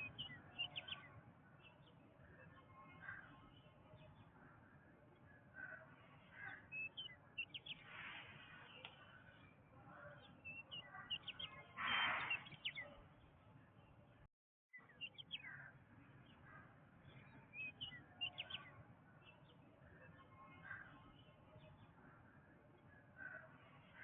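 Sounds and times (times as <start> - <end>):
birds chirping and whistling: 10.5 - 12.8.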